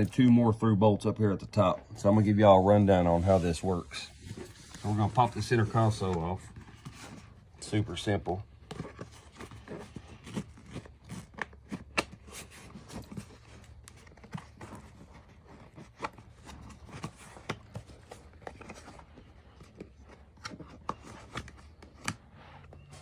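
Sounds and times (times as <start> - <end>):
hard plastic clicks and scrapes: 8.6 - 23.0.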